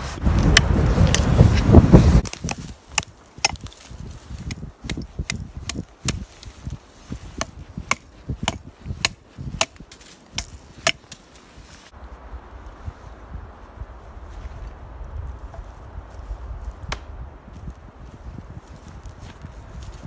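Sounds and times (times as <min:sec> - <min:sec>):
wind buffeting microphone: 0:00.0 - 0:20.0
chopping blows into wood: 0:04.4 - 0:06.5, 0:07.2 - 0:11.2, 0:16.9 - 0:17.1.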